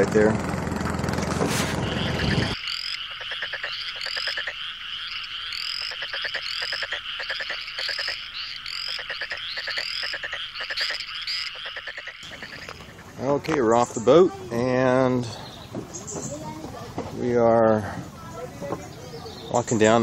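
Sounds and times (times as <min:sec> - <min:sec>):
low engine noise: 0:00.0 - 0:02.6
rising chirps: 0:01.6 - 0:13.4
frogs croaking in chorus: 0:01.8 - 0:13.5.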